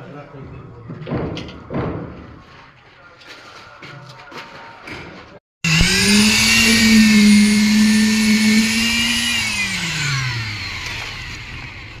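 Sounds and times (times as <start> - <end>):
power tool motor whining: 5.6 - 12.0.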